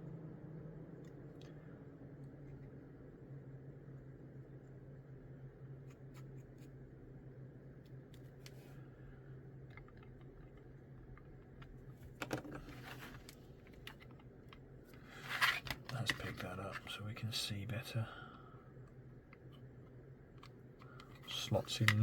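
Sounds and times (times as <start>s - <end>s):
steady low hum: 0.0s - 22.0s
plastic model parts clicking: 20.4s - 22.0s.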